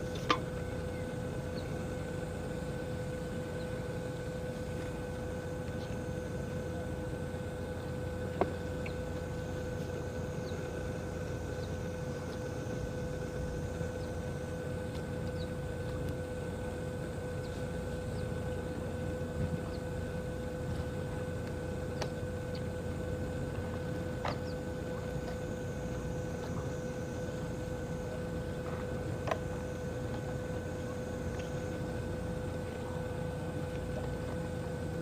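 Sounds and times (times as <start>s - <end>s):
boat machinery hum: 0.0s - 35.0s
faint chirps and clicks: 8.4s - 9.0s, 14.9s - 16.2s.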